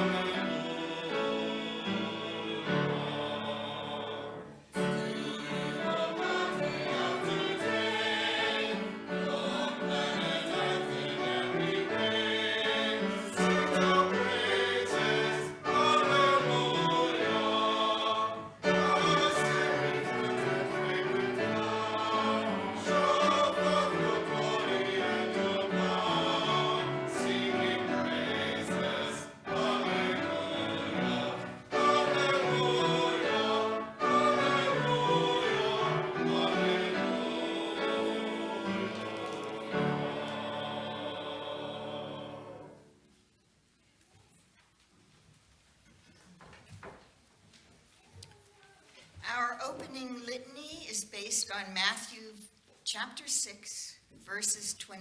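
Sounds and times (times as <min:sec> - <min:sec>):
choir singing: 0:00.0 - 0:43.2.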